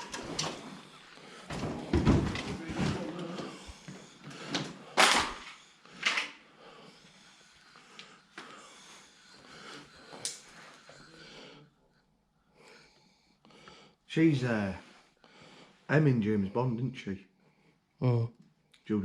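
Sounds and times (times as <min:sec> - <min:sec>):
objects knocking and bumping: 0:01.5 - 0:03.7.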